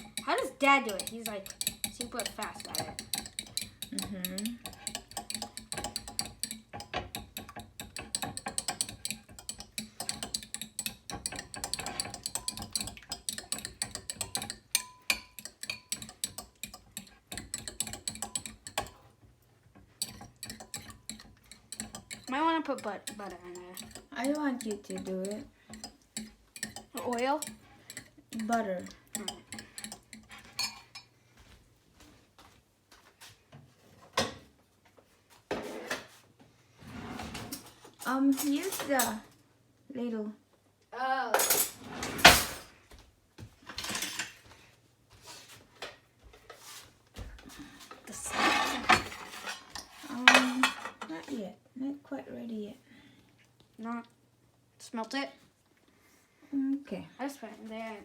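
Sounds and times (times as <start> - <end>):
utensil beating eggs in bowl: 0.0 - 31.1.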